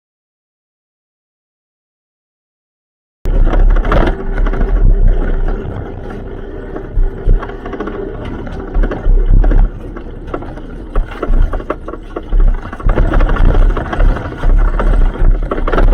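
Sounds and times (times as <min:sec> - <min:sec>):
car engine rumbling: 0:03.3 - 0:15.9.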